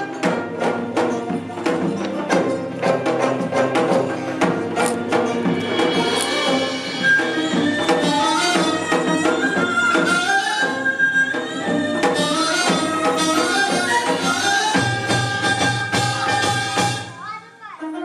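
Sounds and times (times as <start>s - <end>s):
traditional ensemble melody: 0.0s - 18.0s
sharp percussion strokes: 3.1s - 17.4s.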